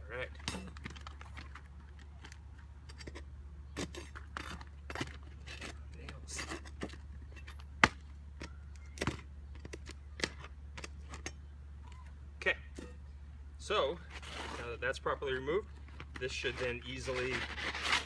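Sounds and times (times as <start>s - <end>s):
steady low hum: 0.0s - 18.0s
hand tools scraping shingles: 3.0s - 7.5s, 14.1s - 14.8s, 16.2s - 18.0s.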